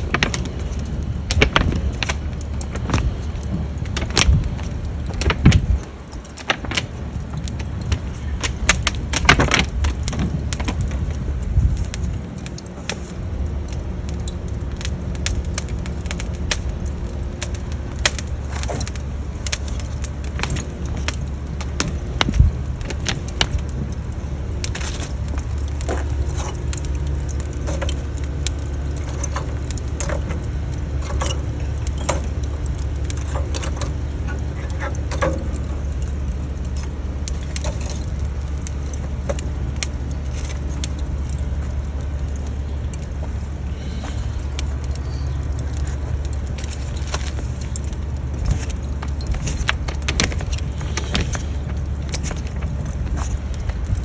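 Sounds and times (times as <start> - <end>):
fire crackling and popping: 0.0 - 54.0
low rumble: 13.2 - 54.0.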